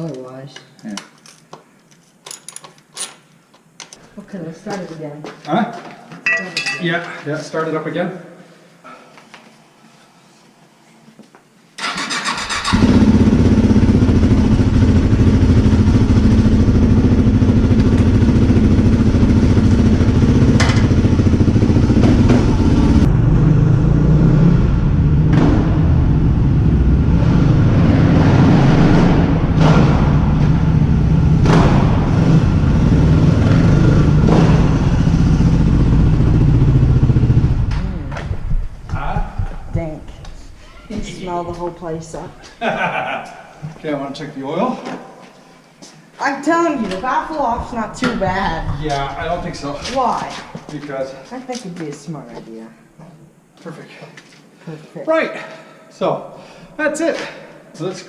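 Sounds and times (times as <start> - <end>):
engine revving blips: 11.9 - 39.0
motorcycle engine idling: 12.8 - 23.1.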